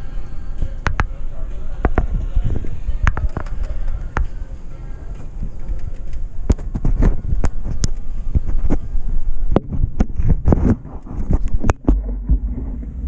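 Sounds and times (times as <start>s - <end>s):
wind on microphone: 0.0s - 13.0s
thumps: 9.5s - 13.0s.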